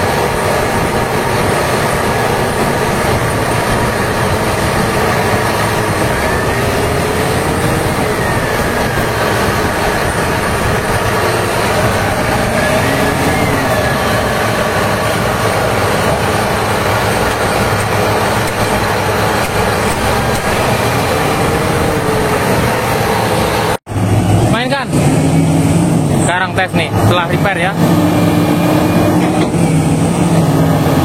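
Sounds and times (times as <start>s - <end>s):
faint rising and falling tone: 0.0s - 24.3s
diesel engine running: 0.0s - 31.0s.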